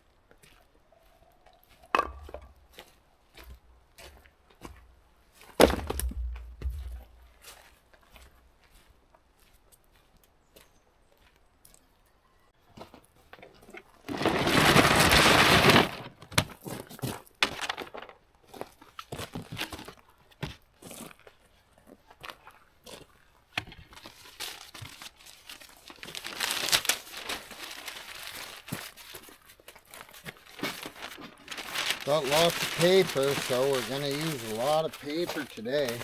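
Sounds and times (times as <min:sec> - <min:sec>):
paper crumpling and tearing: 0:14.1 - 0:16.1, 0:17.4 - 0:18.1, 0:24.1 - 0:36.0.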